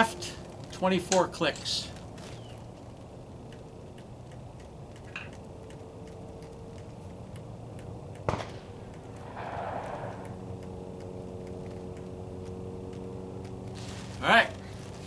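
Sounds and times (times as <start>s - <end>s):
scope turret clicks: 0.6s - 13.6s
sharp bang: 8.3s - 10.3s.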